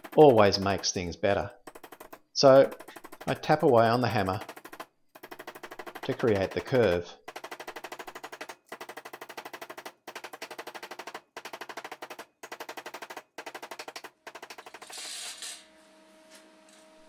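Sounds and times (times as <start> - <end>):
hammer tapping on metal strip: 0.0 - 1.0, 1.6 - 15.1.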